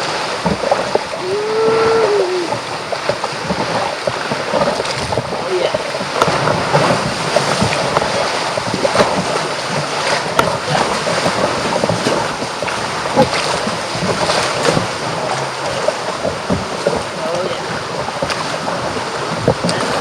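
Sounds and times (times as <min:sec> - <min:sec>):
water splashing around a kayak: 0:00.0 - 0:20.0
wind noise on microphone: 0:00.0 - 0:20.0.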